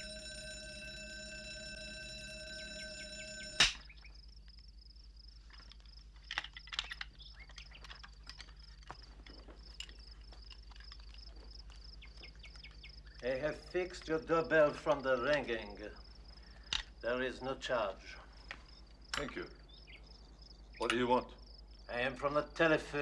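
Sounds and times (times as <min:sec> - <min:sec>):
electric doorbell ringing: 0:00.0 - 0:03.8
crickets chirping: 0:00.0 - 0:23.0.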